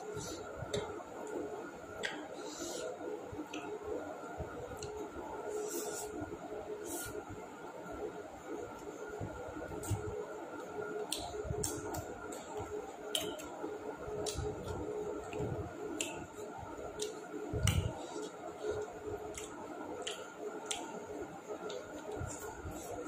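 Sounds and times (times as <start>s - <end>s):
steady background hum: 0.0s - 23.0s
wet chewing smacks: 16.9s - 21.0s.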